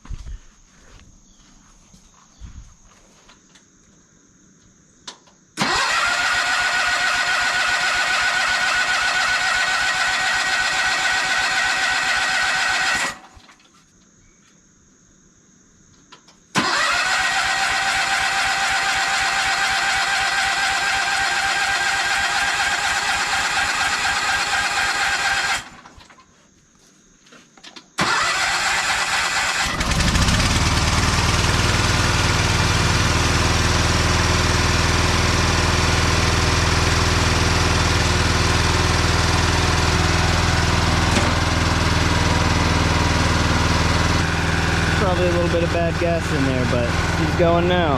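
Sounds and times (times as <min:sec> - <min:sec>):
tractor engine running steadily: 0:05.6 - 0:13.2, 0:16.6 - 0:26.1, 0:28.0 - 0:47.9
tractor engine cranking on starter: 0:05.6 - 0:13.6, 0:16.2 - 0:26.2, 0:27.7 - 0:47.9.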